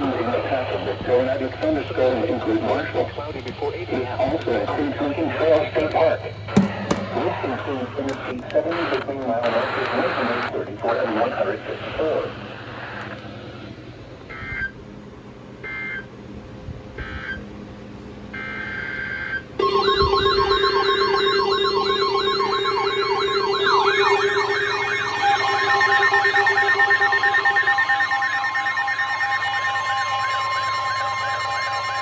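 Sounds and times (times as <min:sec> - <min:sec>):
steady alert tones: 0:06.6 - 0:07.5, 0:19.6 - 0:32.0
screechy data bursts: 0:19.6 - 0:32.0
siren-like warbling wail: 0:19.6 - 0:32.0.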